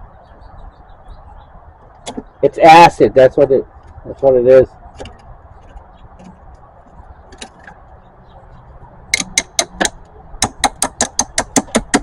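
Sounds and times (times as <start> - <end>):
socket ratchet clicking: 9.1 - 12.0.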